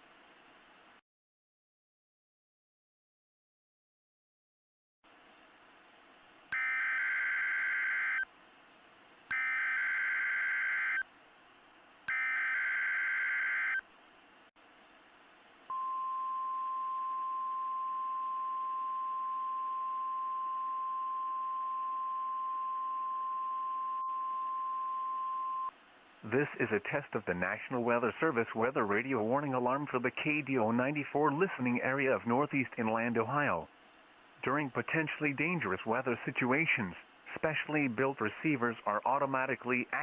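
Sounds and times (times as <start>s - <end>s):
steady warning alarm tone: 6.5s - 8.3s, 9.3s - 11.0s, 12.1s - 13.8s
harsh digital data screech: 9.3s - 11.0s, 12.1s - 13.8s.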